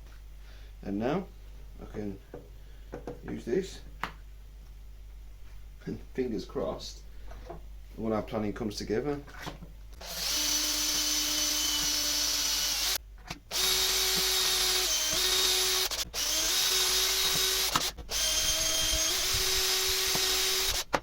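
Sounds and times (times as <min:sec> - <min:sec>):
electric drill boring holes: 0:10.0 - 0:21.0.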